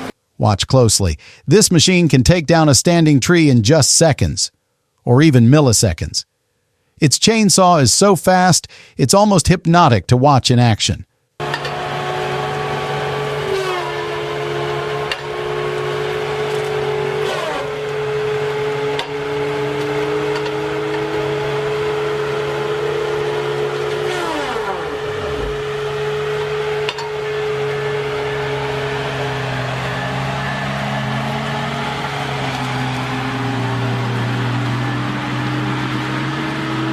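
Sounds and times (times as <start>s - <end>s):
chainsaw engine running: 11.4s - 36.9s.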